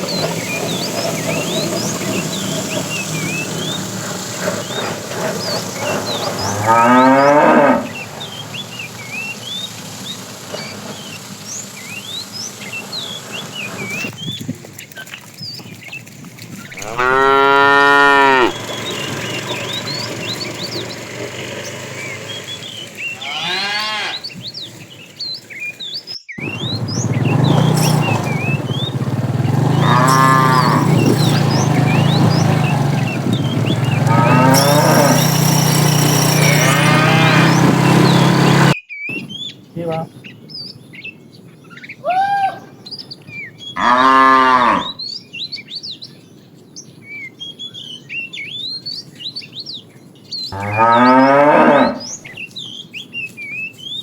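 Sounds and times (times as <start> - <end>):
small birds chirping: 0.0 - 54.0
cattle mooing: 4.5 - 8.4, 16.8 - 20.4, 23.1 - 24.3, 26.4 - 38.8, 43.8 - 45.0, 50.6 - 52.2.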